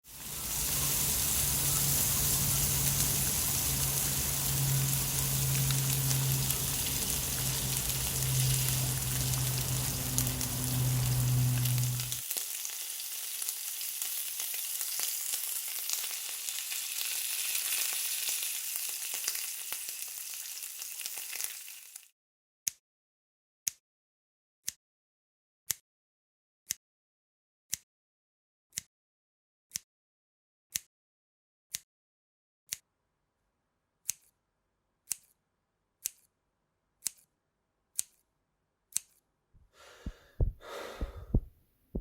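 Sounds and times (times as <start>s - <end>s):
crackling sizzle: 0.0s - 22.1s.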